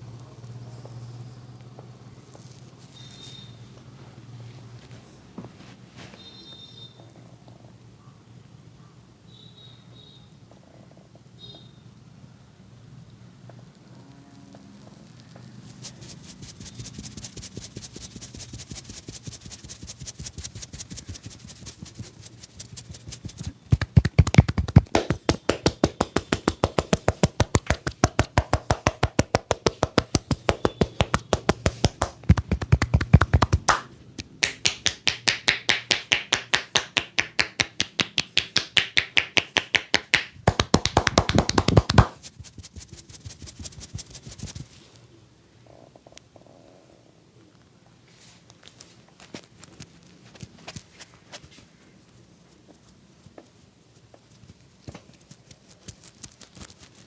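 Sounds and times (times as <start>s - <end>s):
hands slapping and tapping: 15.3s - 44.7s.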